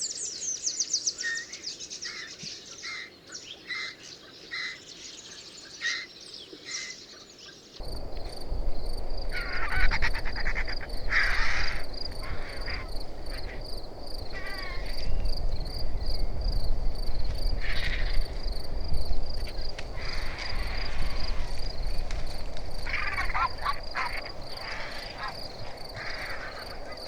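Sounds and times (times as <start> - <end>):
harsh rasping bird calls: 7.8 - 27.0
pulsing insect chirp: 7.8 - 27.0
wind rumble on microphone: 7.8 - 27.0.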